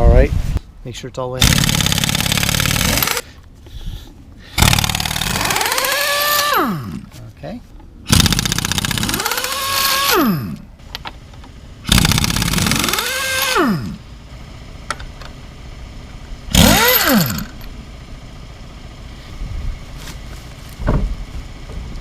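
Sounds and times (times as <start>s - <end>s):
power tool motor spinning up: 1.4s - 3.2s, 4.6s - 7.1s, 8.1s - 10.7s, 11.8s - 14.0s, 16.5s - 17.7s.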